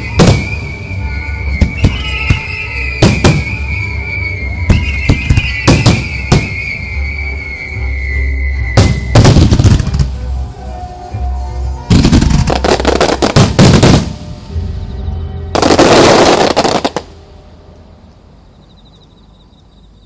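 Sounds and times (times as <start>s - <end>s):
fireworks firing and bursting: 0.0s - 7.0s, 8.7s - 10.1s, 11.9s - 14.3s, 15.6s - 17.1s
music: 0.0s - 18.4s.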